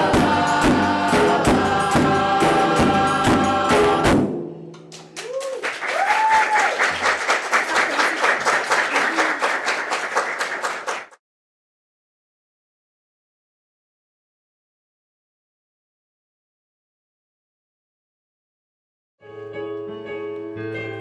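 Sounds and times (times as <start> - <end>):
group singing with instruments: 0.0 - 4.4
audience applause: 4.9 - 11.2
cheering calls: 5.2 - 10.8.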